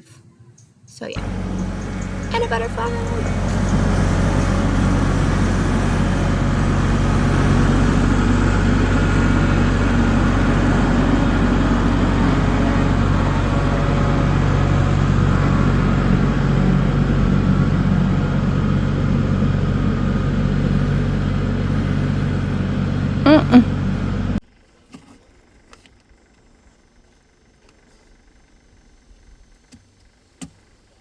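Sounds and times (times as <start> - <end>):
tractor engine running: 1.2 - 24.4.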